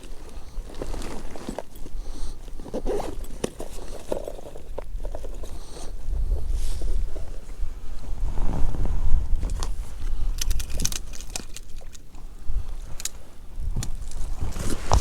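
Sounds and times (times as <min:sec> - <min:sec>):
wind buffeting microphone: 0:06.0 - 0:11.0.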